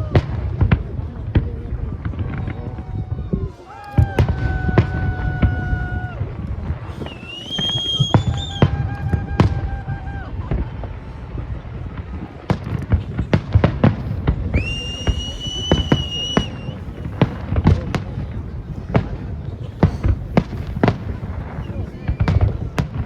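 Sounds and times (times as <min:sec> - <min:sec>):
fireworks bangs and crackles: 0:00.0 - 0:23.0
whistling fireworks: 0:00.0 - 0:23.0.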